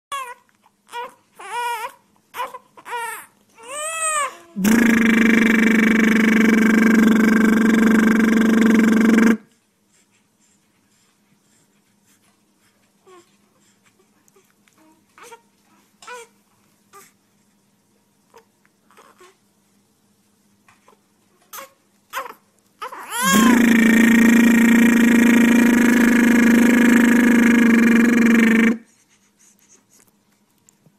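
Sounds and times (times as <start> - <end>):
man making buzzing drone: 4.6 - 9.4, 23.2 - 28.8.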